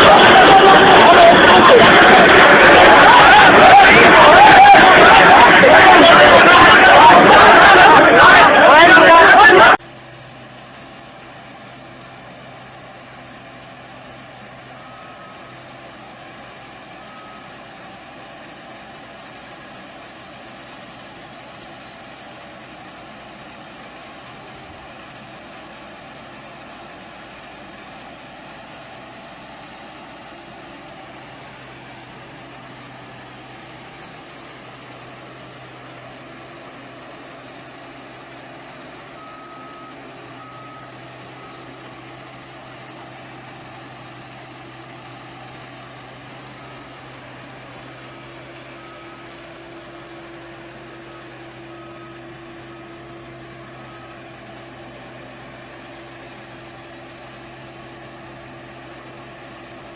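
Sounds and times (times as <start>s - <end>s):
heavy vehicle engine running: 0.0s - 59.9s
reversing alarm beeps: 14.5s - 18.1s, 37.4s - 58.0s.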